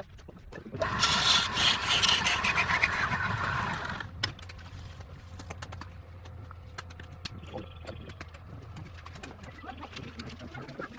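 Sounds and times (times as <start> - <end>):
tool scraping spinning wood: 0.8 - 4.1
wood lathe humming: 0.8 - 4.1.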